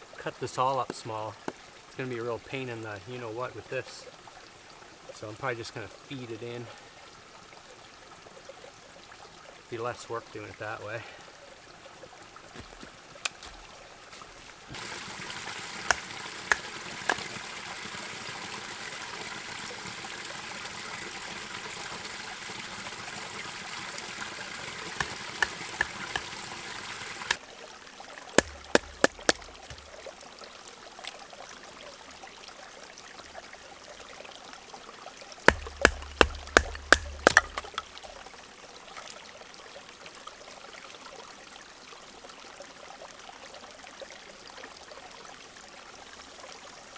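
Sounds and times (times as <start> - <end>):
creek water rushing: 10.4 - 27.4, 28.4 - 30.0, 35.5 - 38.1
sharp cracks: 15.8 - 17.4, 28.4 - 29.9, 35.5 - 38.0
dull thud: 15.9 - 17.2, 28.4 - 29.9, 35.5 - 38.0
sharp clicks: 28.4 - 29.9, 35.5 - 37.8.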